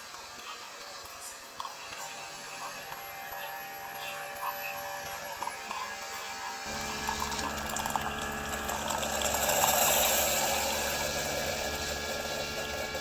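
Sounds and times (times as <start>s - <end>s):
coffee maker pump humming: 0.0s - 13.0s
water running into cup: 6.7s - 13.0s.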